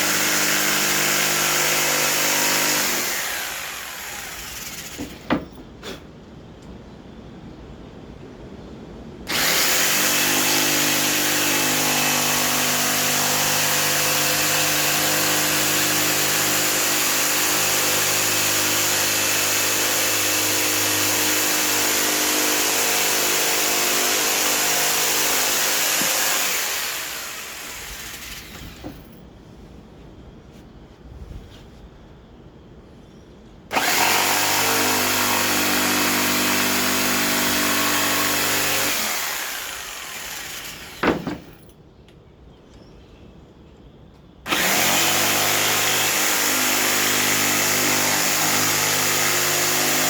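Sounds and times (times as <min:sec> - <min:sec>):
electric saw cutting wood: 0:00.0 - 0:05.1, 0:09.3 - 0:28.9, 0:33.7 - 0:41.5, 0:44.5 - 0:50.0.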